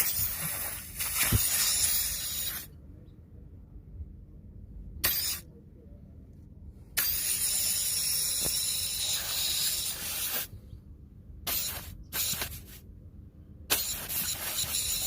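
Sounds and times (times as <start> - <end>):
pressurised gas hissing through tube: 0.0 - 2.7, 7.0 - 10.5, 11.5 - 12.8, 13.7 - 15.0.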